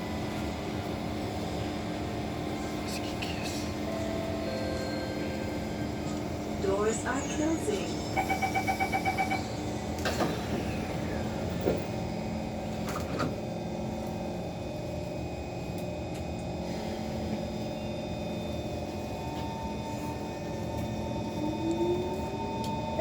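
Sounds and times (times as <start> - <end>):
steady cabin hum: 0.0 - 23.0
traction motors whining: 0.0 - 23.0
train doors shutting with thud: 7.8 - 13.5.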